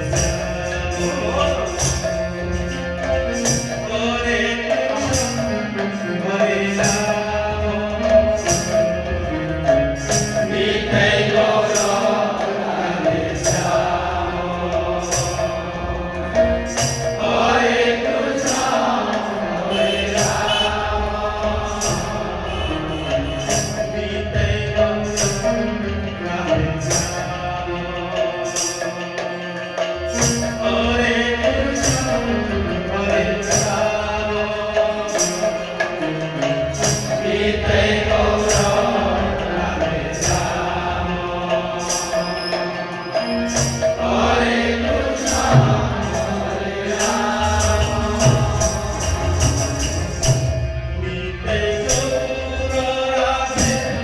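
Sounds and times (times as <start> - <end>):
hand cymbals struck in a beat: 0.0 - 54.0
voices chanting: 0.0 - 54.0
drums: 43.4 - 54.0.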